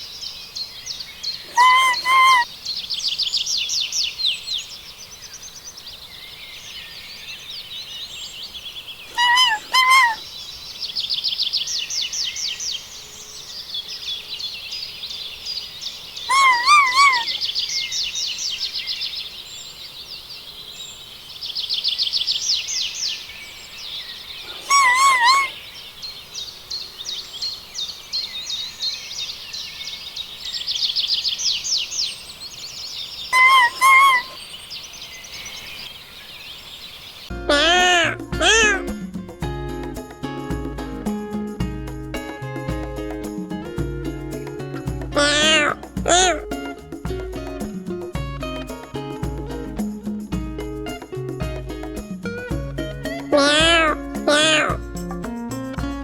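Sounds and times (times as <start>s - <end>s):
small birds chirping: 0.0s - 40.2s, 42.6s - 56.0s
warbling bird call: 1.4s - 2.5s, 9.1s - 10.4s, 16.2s - 17.8s, 24.4s - 25.6s, 33.3s - 34.6s, 37.5s - 39.0s, 45.1s - 46.6s, 53.1s - 55.2s.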